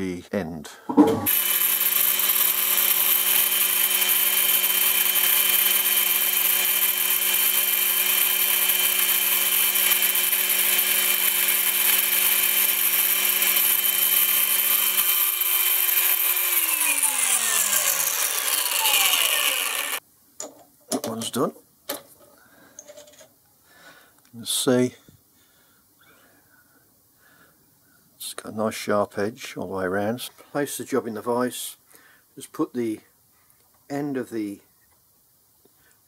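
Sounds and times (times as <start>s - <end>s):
angle grinder grinding metal: 1.2s - 20.0s.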